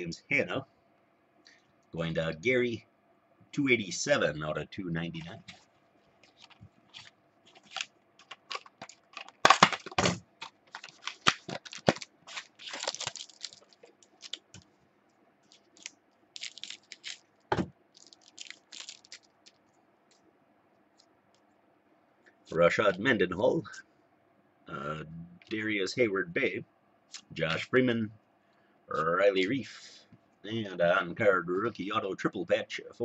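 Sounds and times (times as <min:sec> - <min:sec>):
foil wrapper crinkling and tearing: 0:06.2 - 0:14.6, 0:15.4 - 0:17.3, 0:17.9 - 0:19.6.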